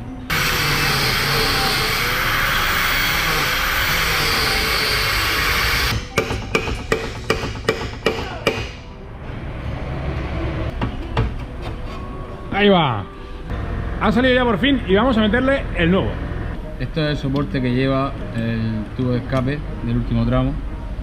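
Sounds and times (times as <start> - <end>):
loud steady hissing: 0.3 - 5.9.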